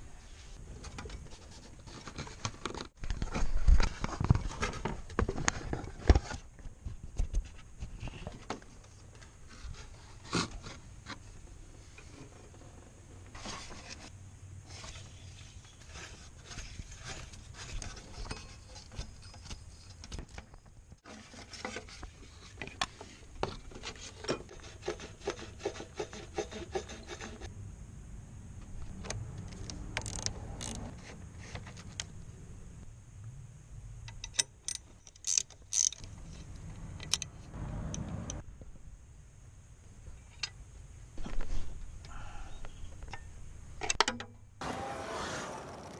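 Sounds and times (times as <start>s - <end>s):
ratchet clicks: 29.6s - 30.8s.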